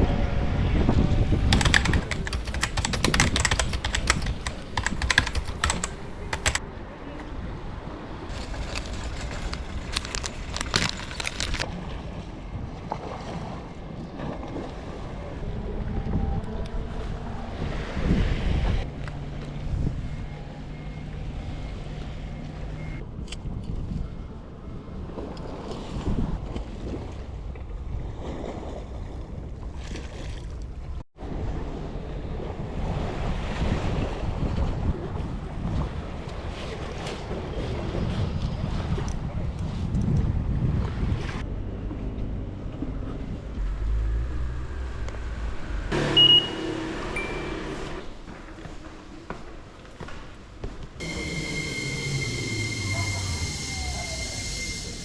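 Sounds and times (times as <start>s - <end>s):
sharp clicks and rustles: 1.2s - 6.6s.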